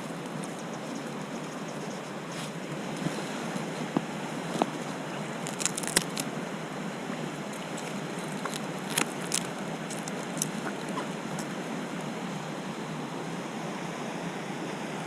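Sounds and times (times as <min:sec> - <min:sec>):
stream water rushing: 0:00.0 - 0:15.0.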